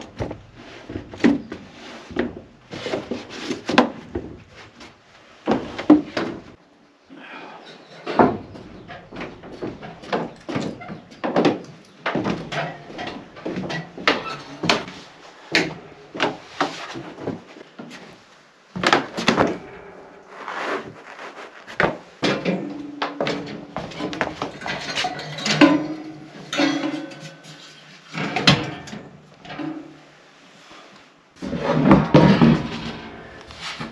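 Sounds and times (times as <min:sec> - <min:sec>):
wooden knocks and clatters: 0:00.0 - 0:06.6, 0:08.0 - 0:15.0, 0:21.8 - 0:27.4, 0:31.4 - 0:33.2.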